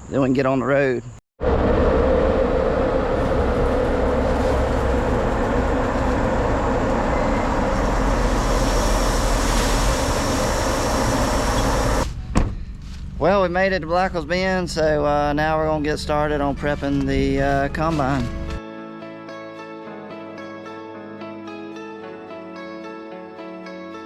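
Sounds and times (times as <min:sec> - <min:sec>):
truck engine: 0:01.4 - 0:12.1
road noise: 0:01.4 - 0:12.2.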